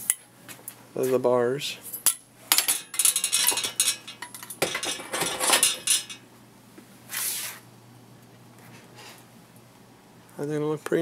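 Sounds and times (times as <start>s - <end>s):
metal bicycle parts clinking: 1.9s - 6.3s.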